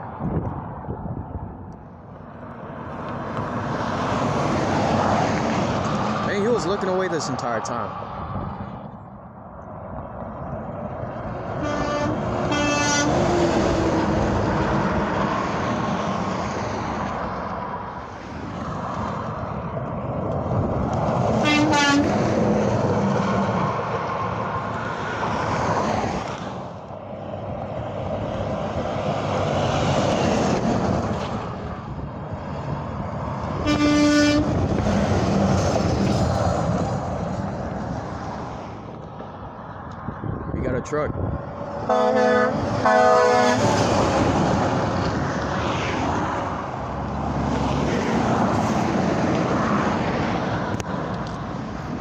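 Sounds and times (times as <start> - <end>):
highway traffic passing: 0.0 - 52.0
truck horn blasts: 11.6 - 13.4, 21.4 - 22.1, 33.6 - 34.6, 41.9 - 43.8.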